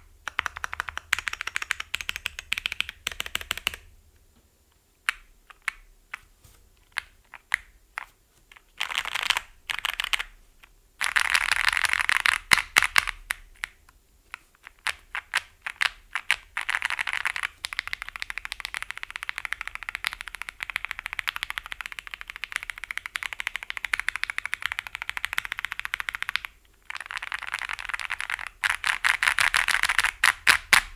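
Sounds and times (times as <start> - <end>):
mechanical keyboard typing: 0.3 - 3.9, 16.7 - 30.6.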